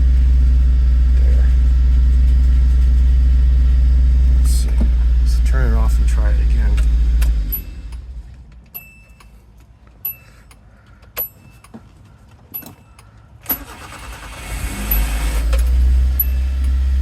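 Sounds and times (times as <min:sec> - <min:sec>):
car engine running: 0:00.0 - 0:08.7, 0:13.5 - 0:17.0
starter cranking: 0:12.6 - 0:17.0.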